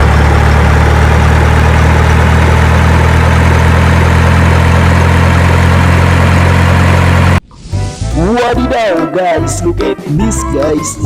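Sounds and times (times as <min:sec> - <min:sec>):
engine idling: 0:00.0 - 0:07.4.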